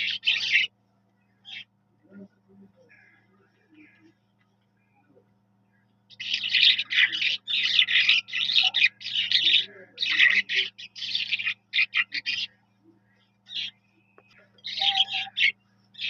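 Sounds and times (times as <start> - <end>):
skylark singing: 0.0 - 0.7, 5.8 - 16.0
faint low hum: 0.0 - 16.0.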